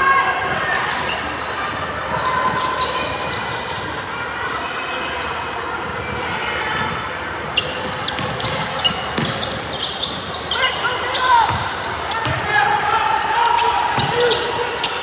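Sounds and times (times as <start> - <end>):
basketball bouncing on gym floor: 6.0 - 12.7, 13.6 - 14.4.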